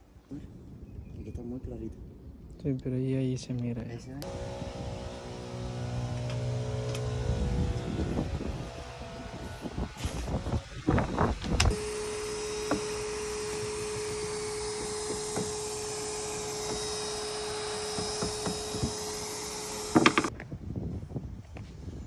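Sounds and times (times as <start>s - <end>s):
power tool running with hiss: 4.2s - 20.3s.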